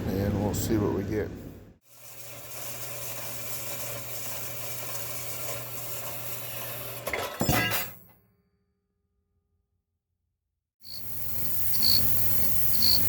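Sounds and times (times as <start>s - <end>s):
bandsaw cutting metal: 1.9s - 8.0s.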